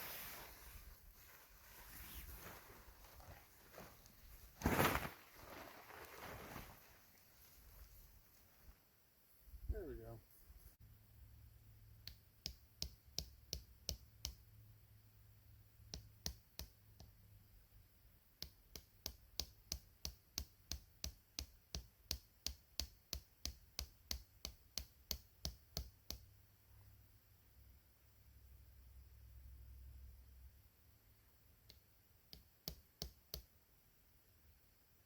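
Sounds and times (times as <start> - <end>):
sharp evenly spaced clicks: 12.0 - 14.5.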